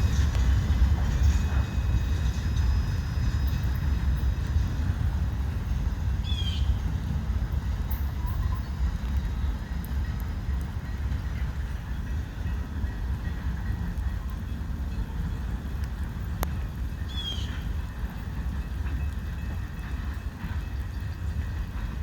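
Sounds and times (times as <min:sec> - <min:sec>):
train rolling past: 0:00.0 - 0:22.0.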